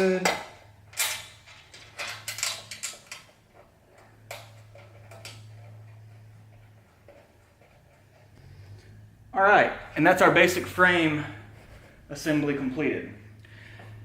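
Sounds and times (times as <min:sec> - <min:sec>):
low steady hum: 0:00.0 - 0:14.0
metal parts clicking and clinking: 0:00.2 - 0:08.4.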